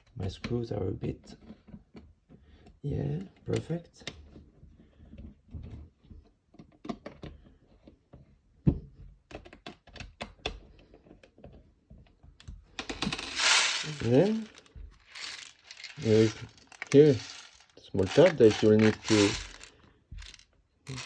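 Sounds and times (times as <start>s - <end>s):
plastic parts clicking: 12.8s - 21.0s.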